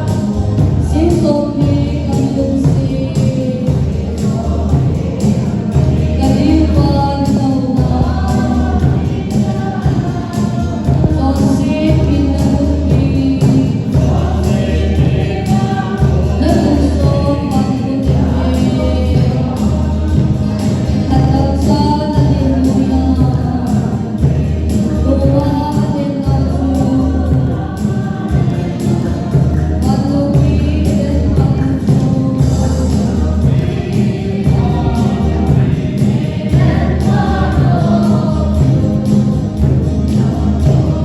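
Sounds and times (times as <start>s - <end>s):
gospel choir singing: 0.0s - 41.0s
music with steady beat: 0.0s - 41.0s.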